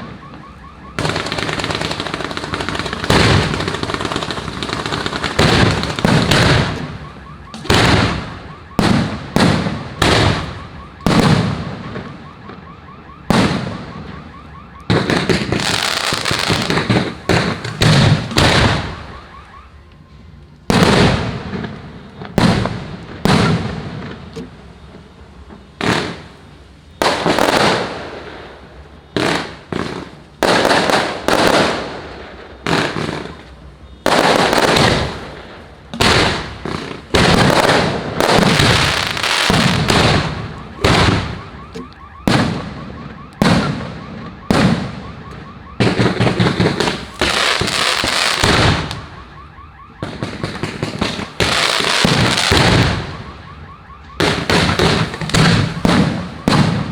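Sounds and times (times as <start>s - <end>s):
firework shells bursting: 1.0s - 8.3s, 45.8s - 49.0s.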